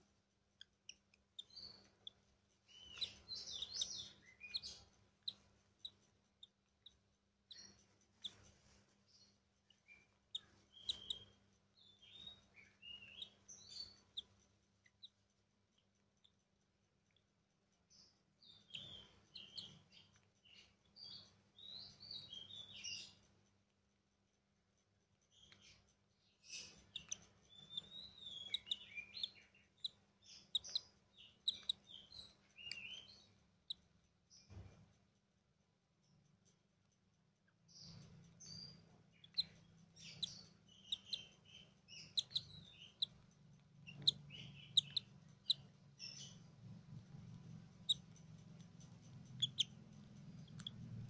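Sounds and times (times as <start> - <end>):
bird chicks begging chirps: 0.6 - 15.2, 18.5 - 23.2, 26.4 - 33.8, 37.6 - 51.0.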